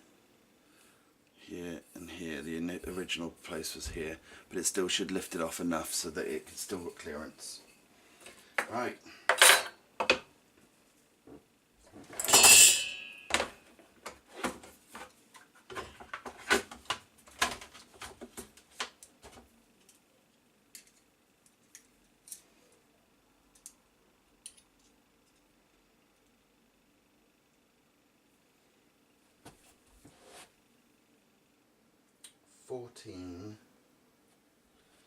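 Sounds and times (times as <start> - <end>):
metal parts clinking: 12.1 - 13.4.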